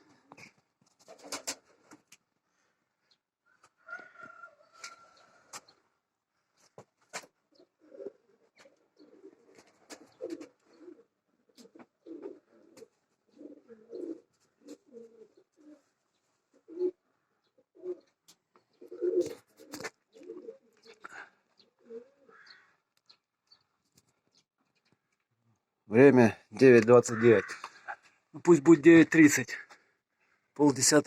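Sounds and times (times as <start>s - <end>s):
pigeons cooing: 7.1s - 23.2s.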